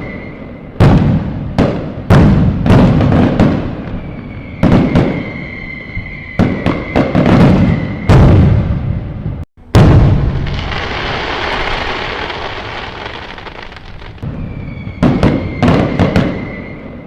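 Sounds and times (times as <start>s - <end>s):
high whistle: 0.0s - 0.8s, 3.9s - 8.4s, 14.2s - 17.0s
fireworks bangs: 0.0s - 17.0s.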